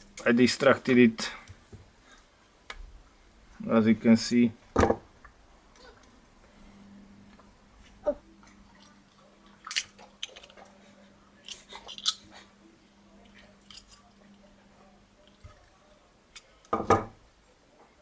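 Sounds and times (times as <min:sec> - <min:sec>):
faint steady hum: 0:00.0 - 0:18.0.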